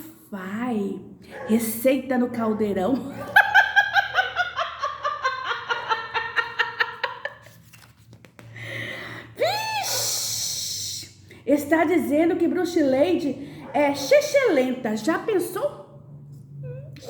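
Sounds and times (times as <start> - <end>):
witch's cackle: 3.2 - 7.4.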